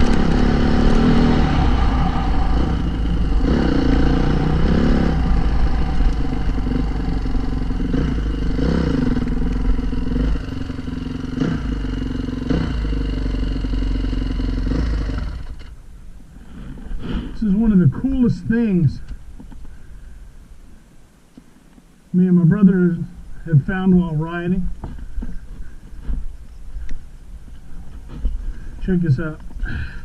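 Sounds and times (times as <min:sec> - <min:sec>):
dirt bike engine revving: 0:00.0 - 0:15.8.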